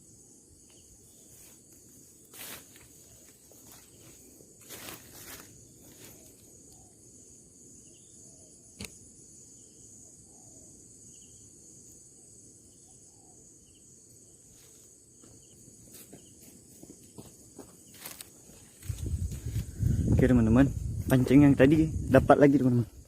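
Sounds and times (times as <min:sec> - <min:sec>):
insect chorus drone: 0:00.0 - 0:23.0
sharp click: 0:08.8 - 0:09.0.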